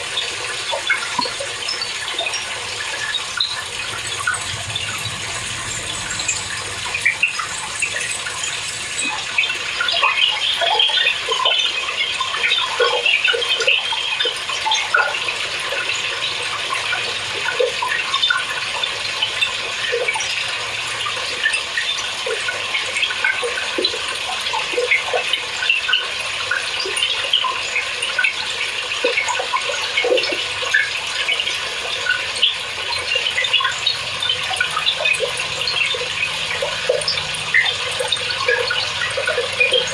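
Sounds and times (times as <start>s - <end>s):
water rushing into washer tub: 0.0s - 11.7s, 31.8s - 39.9s
water splashing: 32.9s - 39.9s.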